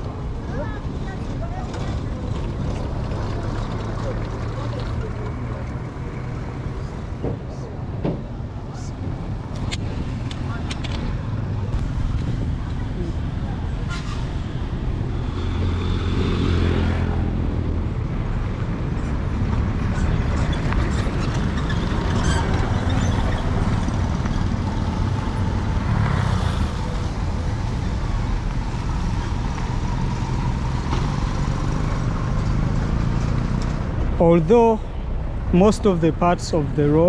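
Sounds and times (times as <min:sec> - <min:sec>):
road traffic: 0:00.0 - 0:37.0
loud vehicle passing: 0:09.8 - 0:37.0.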